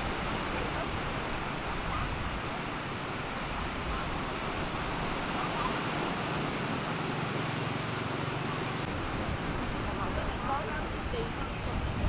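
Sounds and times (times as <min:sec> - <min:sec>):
surf washing on beach: 0:00.0 - 0:12.0
faint crowd chatter: 0:09.2 - 0:12.0.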